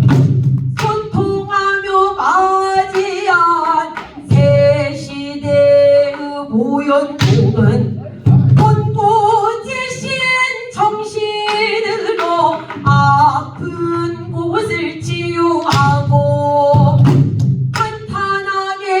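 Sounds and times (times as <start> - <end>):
drum strokes: 7.2 - 9.3.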